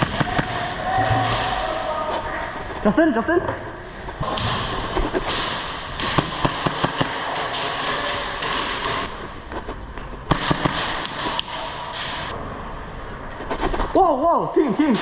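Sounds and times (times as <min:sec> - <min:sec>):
airsoft guns firing: 0:00.0 - 0:01.6, 0:04.2 - 0:09.2, 0:10.3 - 0:12.3.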